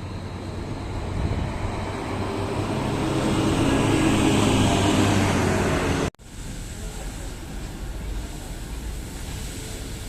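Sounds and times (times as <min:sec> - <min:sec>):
bus diesel engine running: 0:00.0 - 0:10.0.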